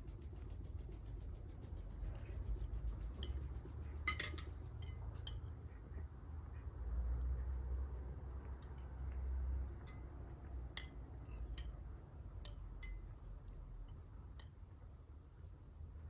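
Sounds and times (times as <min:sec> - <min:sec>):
cutlery clinking against dishes: 0:04.1 - 0:05.4.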